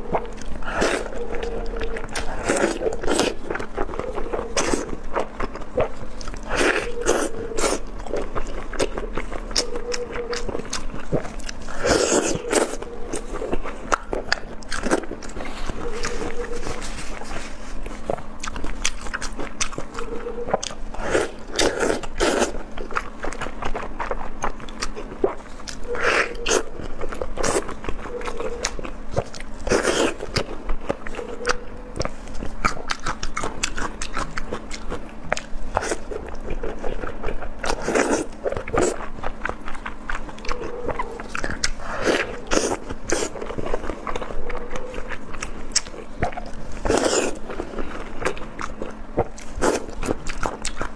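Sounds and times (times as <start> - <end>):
person chewing wetly: 0.0 - 50.9.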